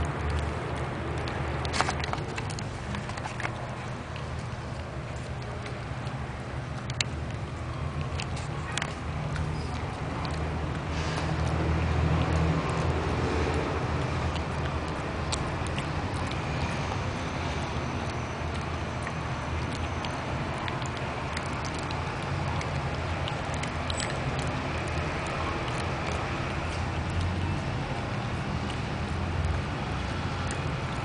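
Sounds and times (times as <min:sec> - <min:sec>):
dog crunching carrot: 0:00.0 - 0:31.0.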